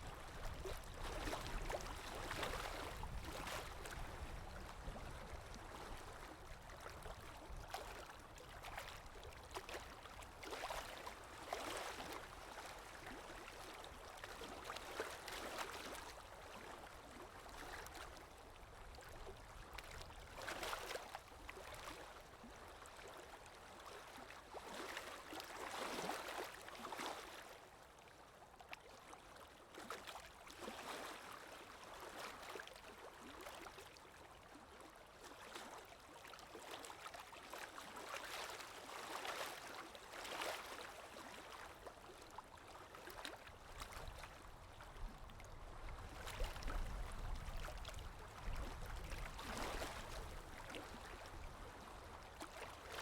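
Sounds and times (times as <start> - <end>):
lake waves breaking on shore: 0.0 - 9.8, 36.8 - 53.0.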